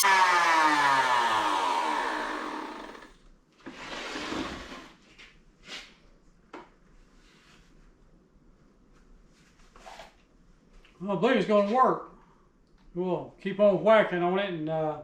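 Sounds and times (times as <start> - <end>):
router motor spinning down: 0.0 - 3.2.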